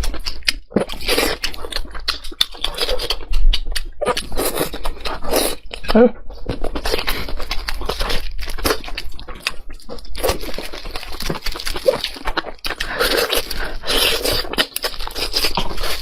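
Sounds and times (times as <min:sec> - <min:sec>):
person chewing and biting food: 0:00.0 - 0:16.0.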